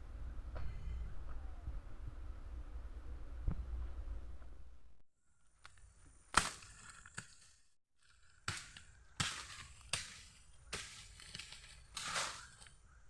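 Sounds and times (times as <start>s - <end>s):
sharp cracking strikes: 8.3s - 12.6s.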